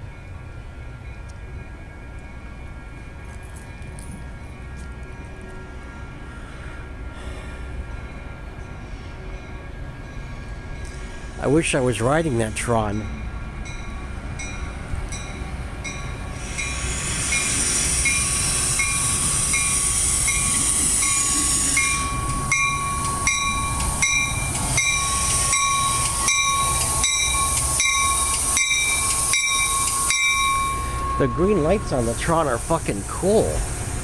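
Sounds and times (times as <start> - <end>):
commuter train rumble and hiss: 0.0 - 34.0
wheels clicking over rail joints: 14.4 - 30.8
bell-like tone: 21.8 - 32.4.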